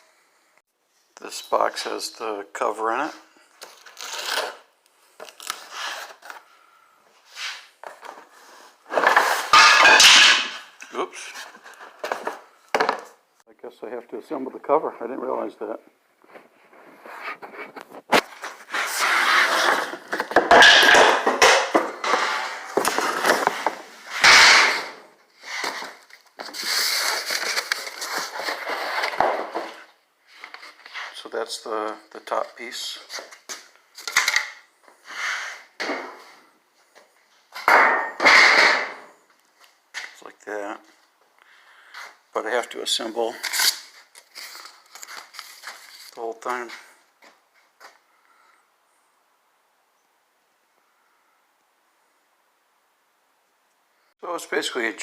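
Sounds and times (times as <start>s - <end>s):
scraping and rustling: 7.2s - 10.5s, 16.2s - 31.2s
wooden pieces knocking: 20.1s - 24.9s.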